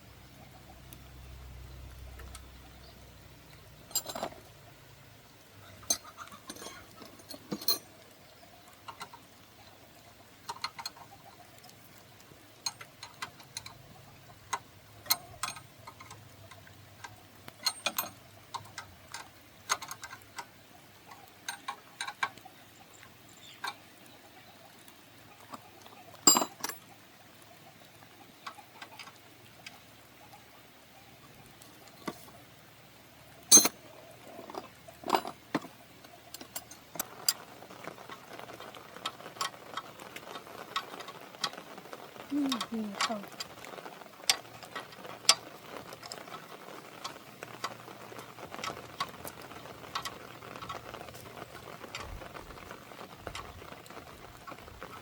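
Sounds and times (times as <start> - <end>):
metal tools clinking: 3.9 - 4.4, 5.8 - 7.9, 17.6 - 18.2, 26.3 - 26.8, 33.5 - 33.8, 34.4 - 35.7.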